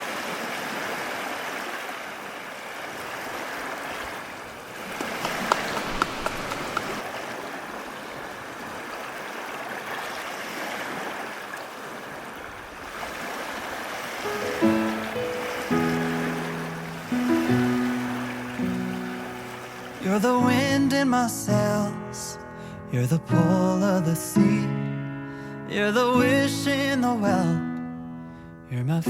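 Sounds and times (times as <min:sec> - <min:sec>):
sharp splashes: 0:00.0 - 0:20.5
stream water rushing: 0:00.0 - 0:21.5.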